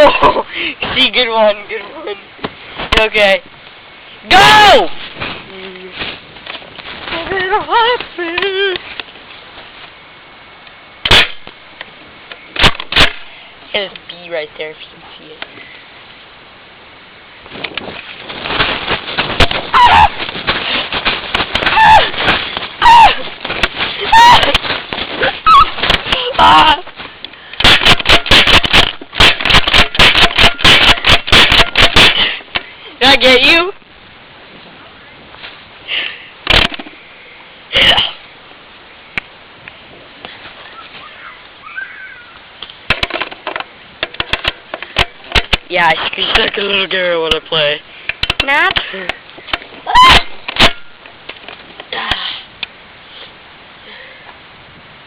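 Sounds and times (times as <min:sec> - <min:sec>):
sharp bang: 0:11.0 - 0:11.5, 0:27.6 - 0:32.3
rustling and knocking: 0:17.5 - 0:32.7, 0:36.5 - 0:37.0, 0:42.7 - 0:46.7.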